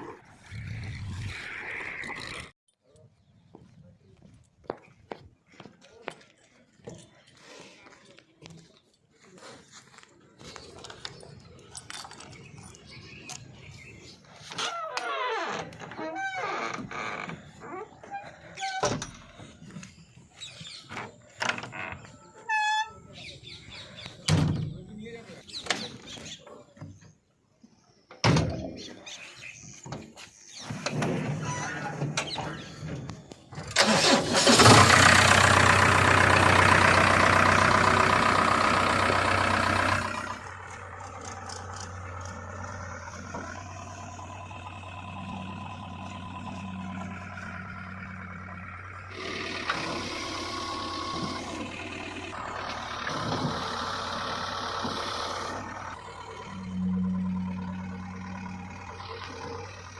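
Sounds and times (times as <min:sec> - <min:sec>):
heavy diesel engine running: 0:33.2 - 0:59.9.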